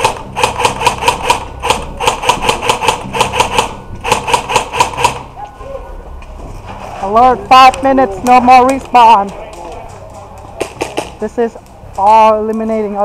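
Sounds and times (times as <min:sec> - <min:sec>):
airsoft gun firing bursts: 0:00.0 - 0:05.3.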